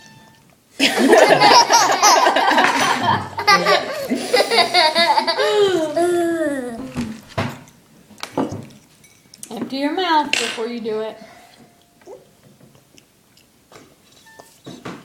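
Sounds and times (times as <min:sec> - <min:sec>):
loud hearty laughter: 0:00.8 - 0:06.2.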